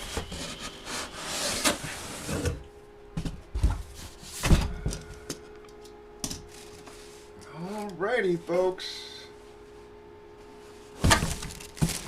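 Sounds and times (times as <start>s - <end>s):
packaging sliding and scraping: 0.0s - 2.6s, 10.9s - 12.0s
dull thumps and knocks: 11.0s - 12.0s.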